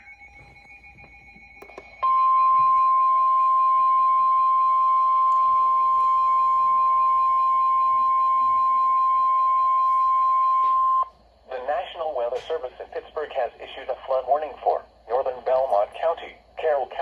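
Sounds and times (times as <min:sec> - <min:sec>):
steady alarm beep tone: 0:00.0 - 0:11.2
radio static: 0:11.5 - 0:17.0.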